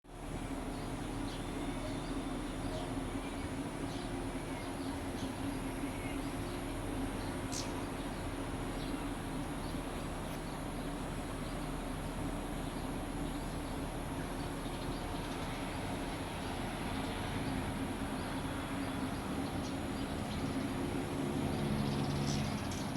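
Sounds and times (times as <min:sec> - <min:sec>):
steady low hum and hiss: 0:00.1 - 0:22.9.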